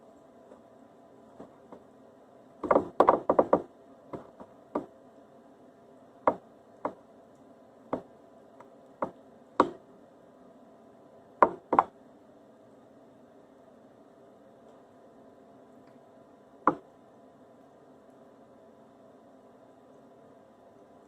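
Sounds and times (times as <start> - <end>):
knife chopping on cutting board: 9.0 - 9.8.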